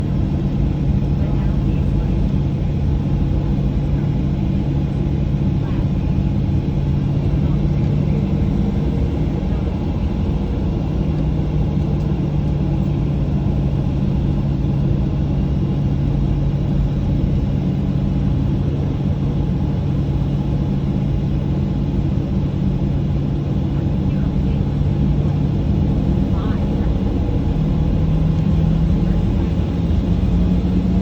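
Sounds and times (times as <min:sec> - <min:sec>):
jet engines rumbling in cabin: 0:00.0 - 0:31.0.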